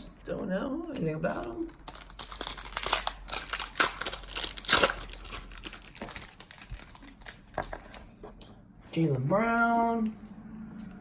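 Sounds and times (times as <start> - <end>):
plastic wrapper crinkling: 1.4 - 8.1.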